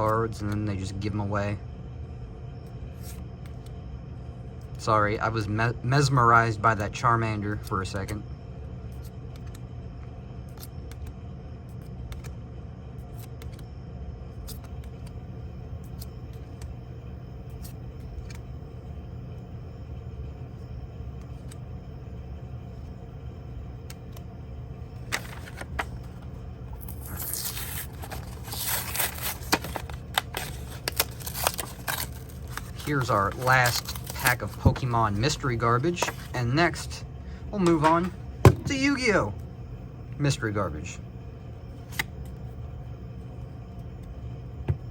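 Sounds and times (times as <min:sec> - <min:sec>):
steady low hum: 0:00.0 - 0:44.9
plastic wrapper crinkling: 0:26.8 - 0:34.8.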